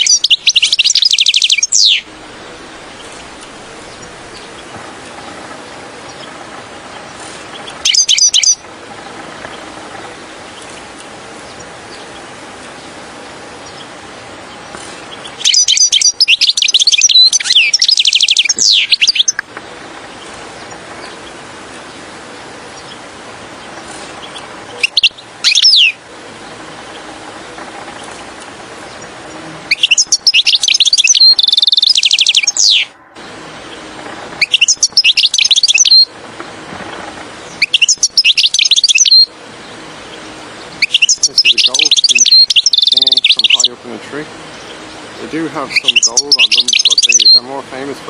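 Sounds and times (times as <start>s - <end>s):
steady background hiss: 0.0s - 48.0s
goldfinch tinkling twitters: 29.7s - 32.9s, 34.4s - 36.1s, 37.5s - 39.3s, 40.8s - 43.8s, 44.6s - 47.5s.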